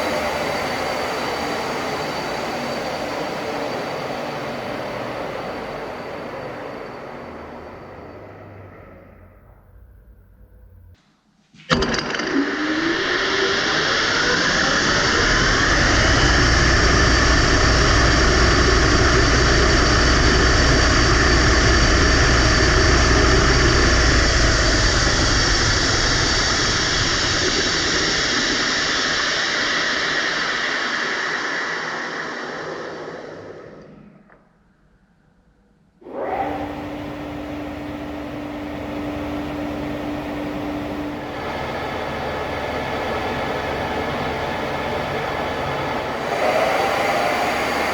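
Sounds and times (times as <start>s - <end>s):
low machine hum: 0.0s - 11.0s, 36.0s - 47.9s
metal lathe whirring: 36.0s - 47.9s.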